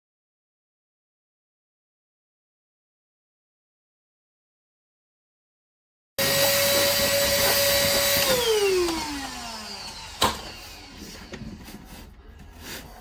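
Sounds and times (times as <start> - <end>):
mitre saw motor whining: 6.2 - 11.4.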